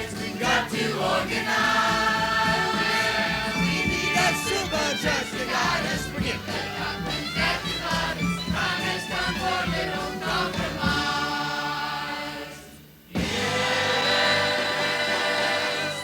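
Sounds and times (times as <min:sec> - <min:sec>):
gospel choir with accompaniment: 0:00.0 - 0:16.0.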